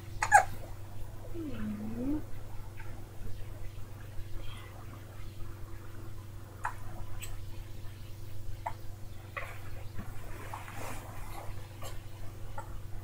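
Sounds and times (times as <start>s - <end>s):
steady low hum: 0.0s - 13.0s
baby hiccuping: 0.2s - 0.6s.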